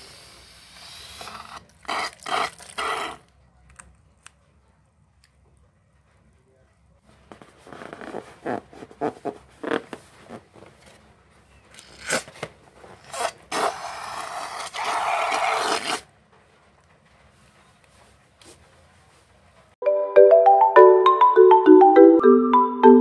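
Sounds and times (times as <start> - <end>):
balloon rasping: 0.0 - 3.3, 7.5 - 10.5, 11.8 - 16.1.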